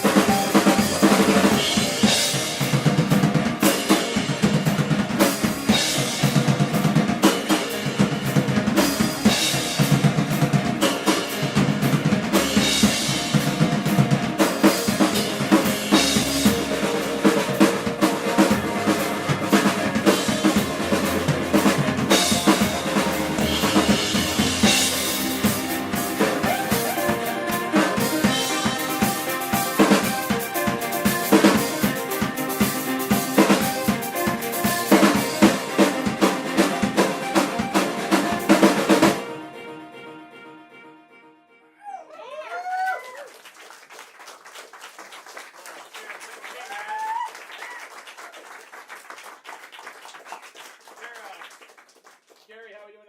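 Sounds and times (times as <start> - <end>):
live band playing: 0.0 - 40.8
cymbals washing: 12.5 - 39.0.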